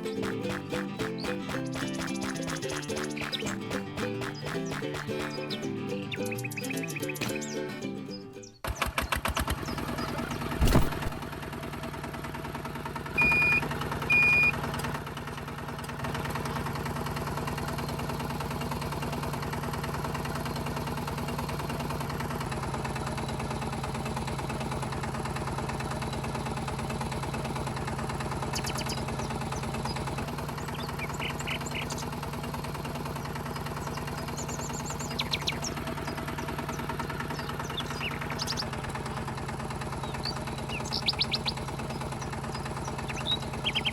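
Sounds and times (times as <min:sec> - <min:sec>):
small tractor motor running: 0:00.0 - 0:43.9
short high beeps: 0:13.2 - 0:14.5.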